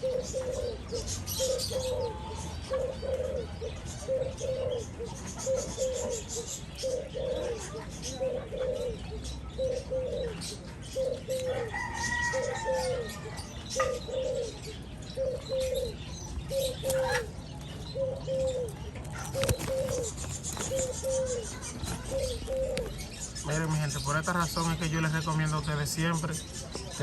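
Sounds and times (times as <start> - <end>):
doves cooing: 0.0 - 27.0
wings fluttering and rustling: 18.7 - 23.5.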